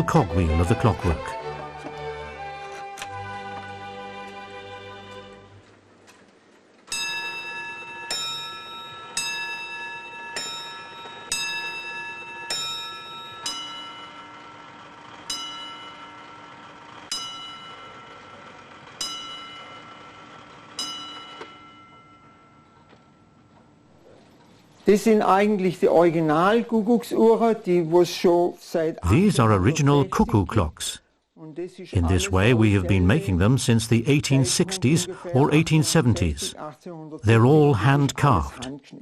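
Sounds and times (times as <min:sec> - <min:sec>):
clock chiming on bells: 0:06.9 - 0:23.8.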